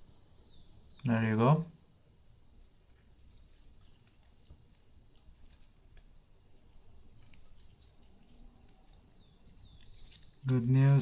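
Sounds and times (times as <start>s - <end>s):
small parts clicking and tapping: 7.1s - 11.0s.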